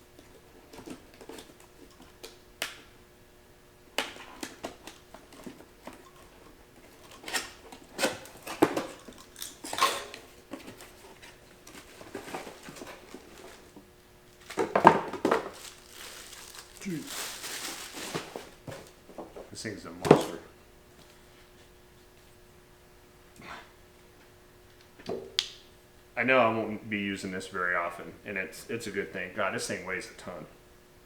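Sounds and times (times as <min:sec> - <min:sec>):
clatter and rustling: 0:04.0 - 0:13.8
packaging being handled: 0:07.0 - 0:19.0.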